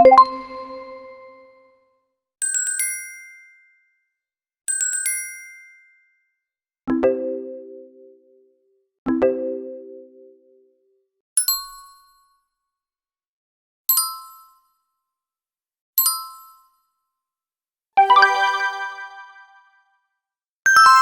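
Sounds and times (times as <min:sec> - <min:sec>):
game show chime: 0:00.0 - 0:01.4, 0:18.0 - 0:19.6
many-note chime: 0:18.0 - 0:19.6.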